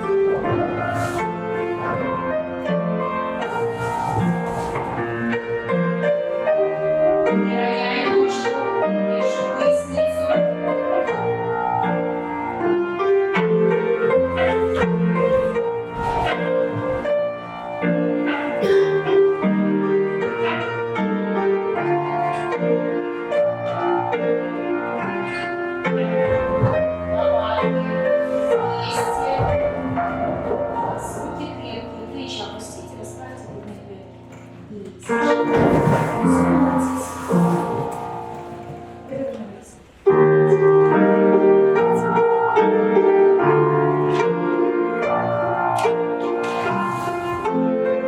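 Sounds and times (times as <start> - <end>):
piano dance tune: 0.0 - 48.0.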